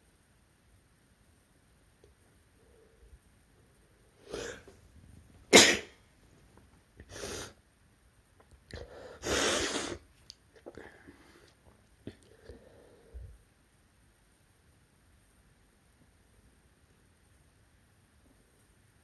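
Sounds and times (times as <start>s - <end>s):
person sneezing: 4.3s - 4.7s, 5.5s - 6.0s, 9.2s - 10.0s.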